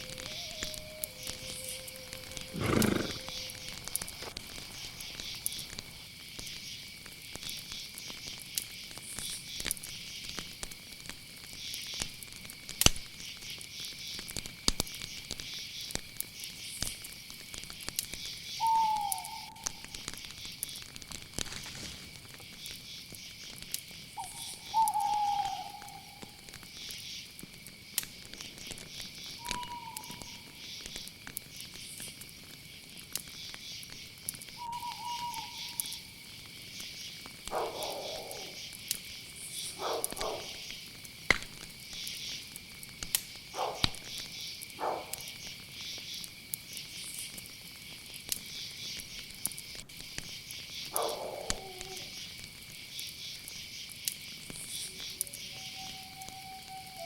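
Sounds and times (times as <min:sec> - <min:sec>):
owl hooting: 0:00.0 - 0:04.0, 0:18.6 - 0:19.9, 0:24.2 - 0:26.4, 0:29.4 - 0:30.5, 0:34.6 - 0:36.0, 0:50.9 - 0:52.2, 0:55.2 - 0:57.0
low animal calls: 0:00.0 - 0:04.3, 0:24.2 - 0:26.4, 0:34.6 - 0:36.0, 0:50.9 - 0:52.2, 0:55.1 - 0:57.0
crickets and insects chirring: 0:00.0 - 0:57.0
sharp crackling clicks: 0:25.8 - 0:32.1, 0:40.0 - 0:46.8.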